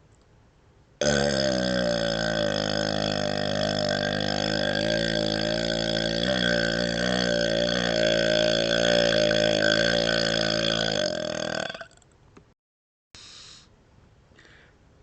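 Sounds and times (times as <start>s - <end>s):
man burping: 1.0s - 12.0s.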